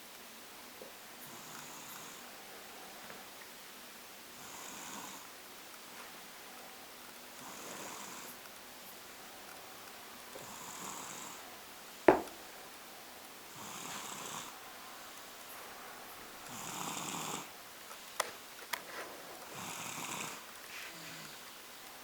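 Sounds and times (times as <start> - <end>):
toddler snoring: 1.3 - 2.2, 4.4 - 5.3, 7.4 - 8.4, 10.4 - 11.4, 13.5 - 14.6, 16.5 - 17.5, 19.5 - 21.4.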